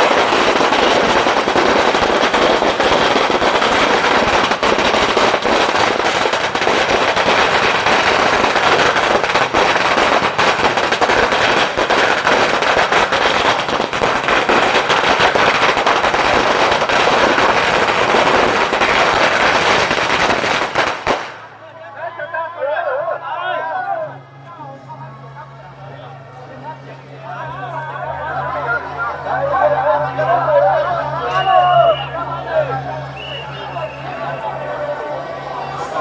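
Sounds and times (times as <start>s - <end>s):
firecrackers crackling: 0.0s - 21.7s, 29.3s - 36.0s.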